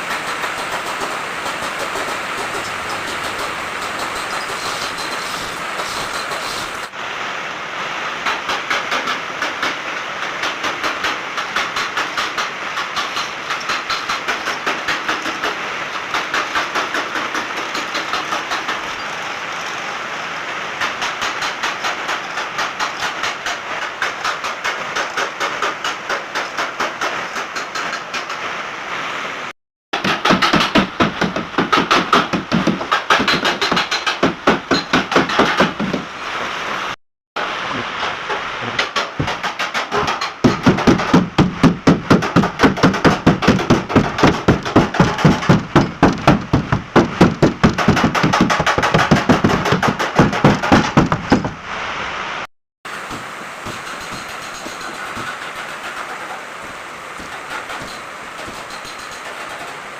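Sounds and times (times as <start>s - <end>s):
hammer knocking on sheet metal: 30.0s - 36.1s, 38.8s - 51.6s.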